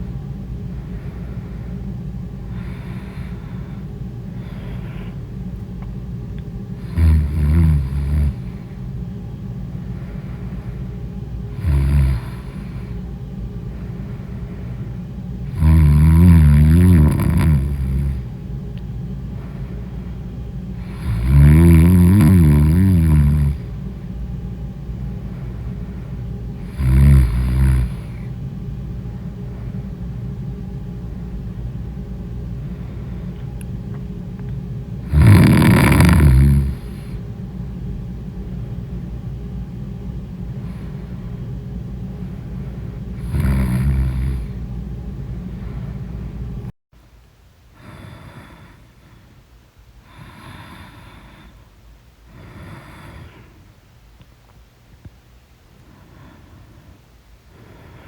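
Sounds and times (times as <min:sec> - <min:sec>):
steady low hum: 0:00.0 - 0:58.0
person snoring: 0:02.5 - 0:05.2, 0:06.8 - 0:08.8, 0:11.5 - 0:13.0, 0:15.4 - 0:18.3, 0:20.8 - 0:23.8, 0:26.6 - 0:28.3, 0:35.0 - 0:37.3, 0:40.6 - 0:41.2, 0:43.1 - 0:44.6, 0:47.8 - 0:48.9, 0:50.1 - 0:51.6, 0:52.3 - 0:53.5.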